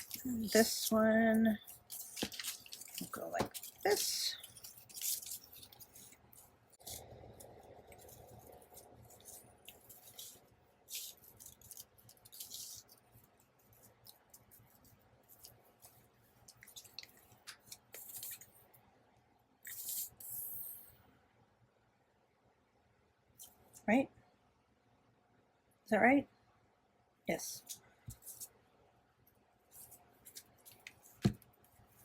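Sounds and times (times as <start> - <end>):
paper rustling and scraping: 0.0 - 18.6.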